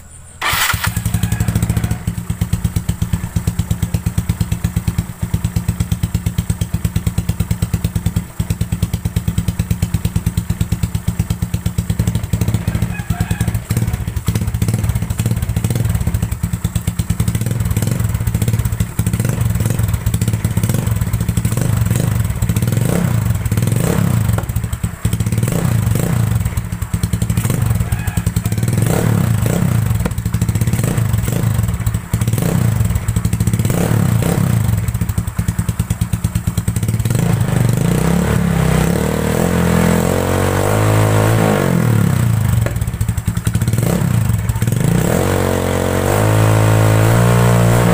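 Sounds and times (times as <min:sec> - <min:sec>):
scooter engine idling: 0:00.0 - 0:38.6, 0:41.8 - 0:44.9
engine revving: 0:00.4 - 0:03.1, 0:17.2 - 0:35.7, 0:36.6 - 0:47.9.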